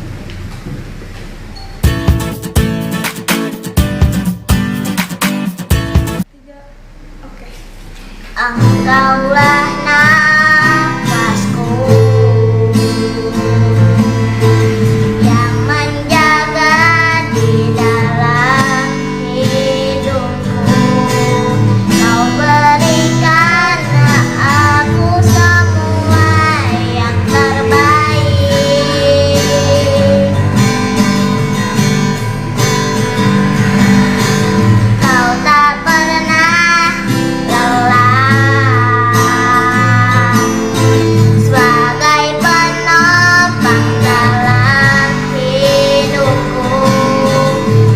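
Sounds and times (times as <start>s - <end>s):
karaoke backing track with guitar: 0.0s - 6.3s, 7.1s - 47.9s
child singing with vibrato: 8.2s - 31.0s, 34.8s - 47.9s.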